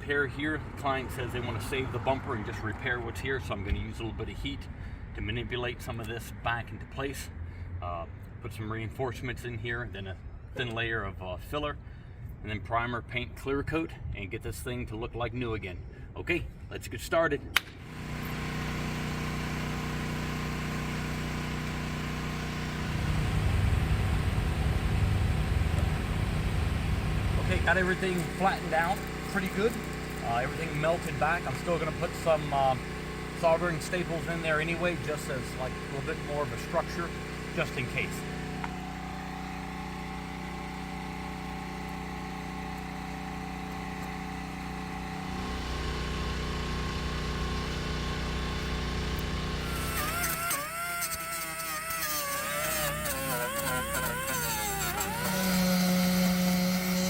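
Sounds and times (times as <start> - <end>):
heat gun blowing: 17.9 - 57.0
steady hum: 19.4 - 57.0.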